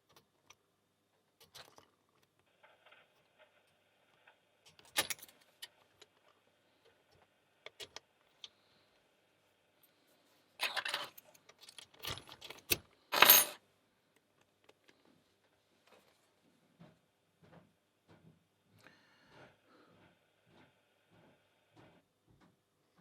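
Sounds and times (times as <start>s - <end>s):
padlock clicking and rattling: 11.0s - 12.8s.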